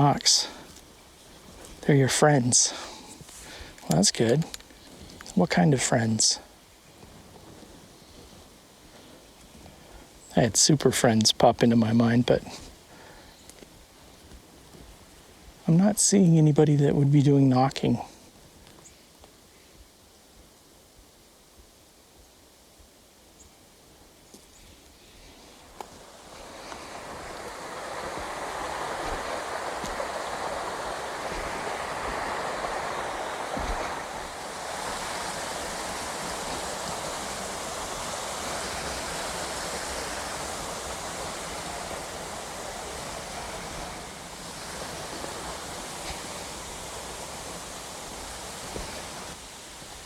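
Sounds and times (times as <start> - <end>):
rushing stream water: 0.0 - 6.6, 25.5 - 50.0.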